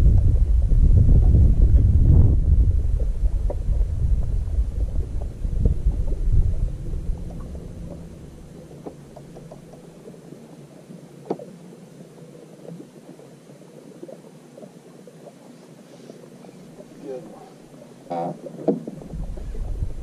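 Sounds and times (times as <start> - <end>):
wind gusting on microphone: 0.0 - 9.6, 19.0 - 20.0
light clicks and knocks: 7.2 - 10.2.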